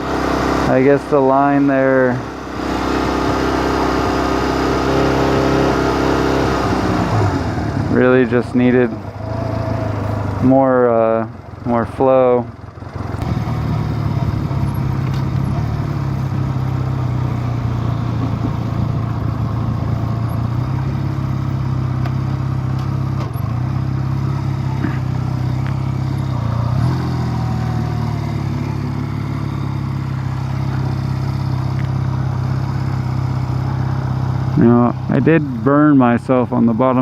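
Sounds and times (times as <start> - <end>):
motorcycle engine idling: 0.0 - 37.0.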